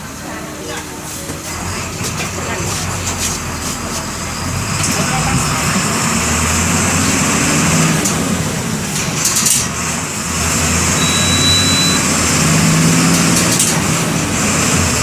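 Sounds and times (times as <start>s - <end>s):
bus diesel engine running: 0.0s - 15.0s
thin high tone: 11.0s - 12.1s.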